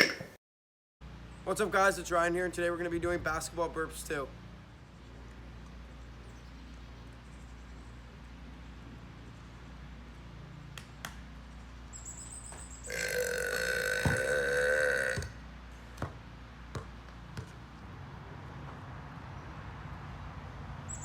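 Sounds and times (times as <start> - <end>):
person burping loudly: 12.9 - 15.4.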